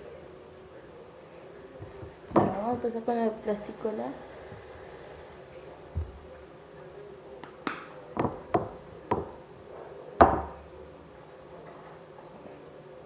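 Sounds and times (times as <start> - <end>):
bottle and container knocking on table: 1.8 - 2.9.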